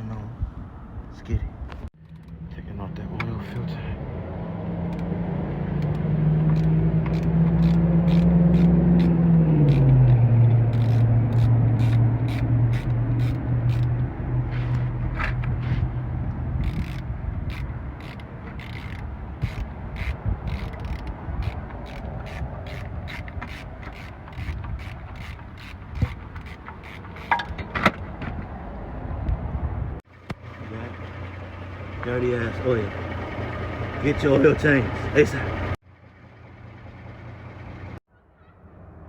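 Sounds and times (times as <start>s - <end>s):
socket ratchet clicking: 6.5s - 10.0s, 10.7s - 13.9s, 16.6s - 27.6s.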